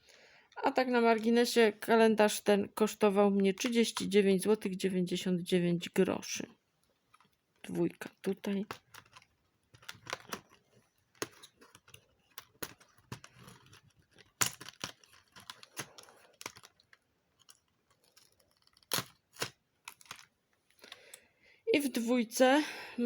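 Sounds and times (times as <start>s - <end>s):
cardboard and plastic crinkling: 8.0s - 20.4s
packaging snaps: 8.6s - 21.2s.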